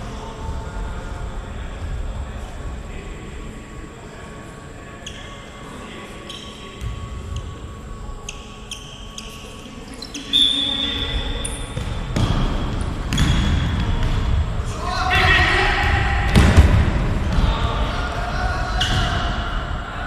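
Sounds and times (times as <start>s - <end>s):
shoes squeaking on floor: 6.2s - 6.8s, 8.2s - 12.0s
ball thuds: 16.2s - 17.6s.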